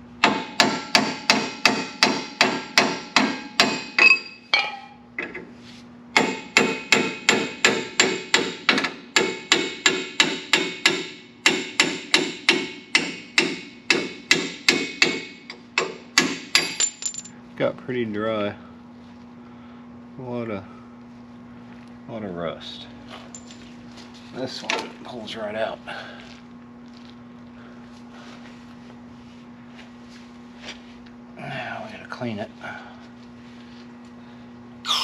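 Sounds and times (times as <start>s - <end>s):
hammer striking steel punch: 0.2s - 5.0s, 6.2s - 16.9s.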